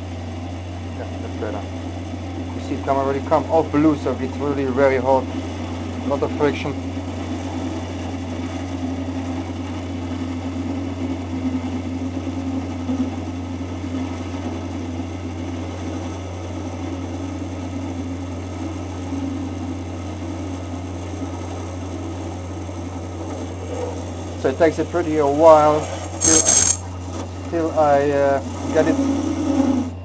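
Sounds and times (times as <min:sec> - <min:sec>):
lathe motor running: 0:11.9 - 0:30.0.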